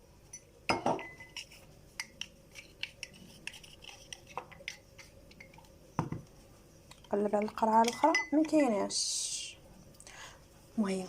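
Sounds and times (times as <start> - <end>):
glass jars clinking: 0.3 - 1.4, 7.4 - 8.7.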